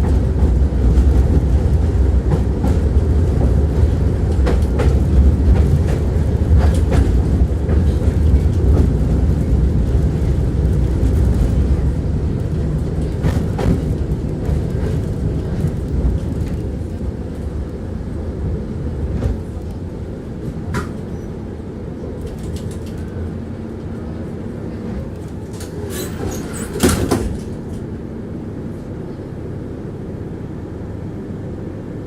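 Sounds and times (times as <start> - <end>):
tram rumbling on track: 0.0 - 32.0
wheels clicking on rails: 22.1 - 23.3.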